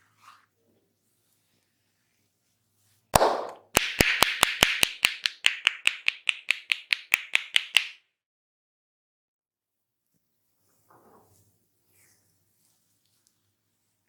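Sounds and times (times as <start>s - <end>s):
hands tapping on a head: 3.2s - 8.0s.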